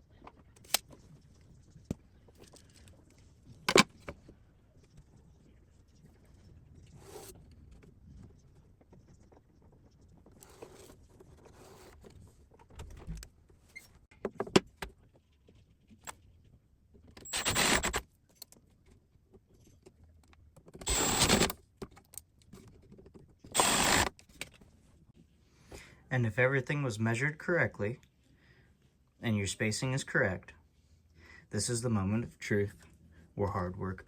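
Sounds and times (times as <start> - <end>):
cordless drill driving screws: 17.3 - 18.0, 20.9 - 21.5, 23.6 - 24.1.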